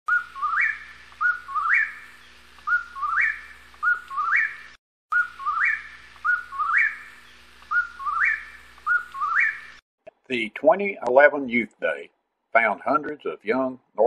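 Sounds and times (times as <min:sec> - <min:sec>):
songbird whistling: 0:00.1 - 0:09.8.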